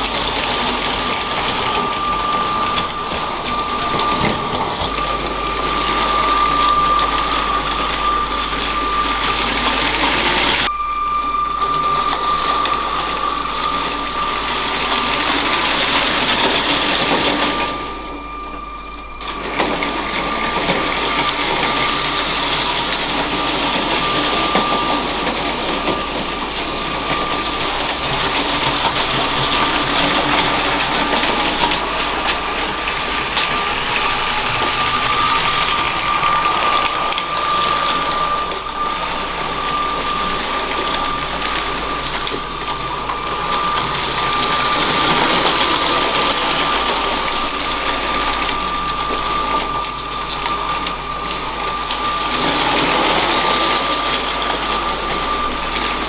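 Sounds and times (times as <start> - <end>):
wheels rattling on plastic track: 0.0 - 10.7, 11.5 - 56.0
toy train motor whine: 0.0 - 56.0.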